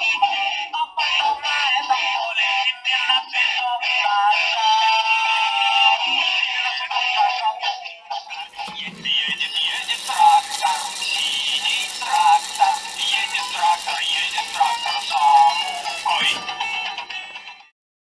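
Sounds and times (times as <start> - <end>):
tinny electronic children's song: 8.3 - 17.7.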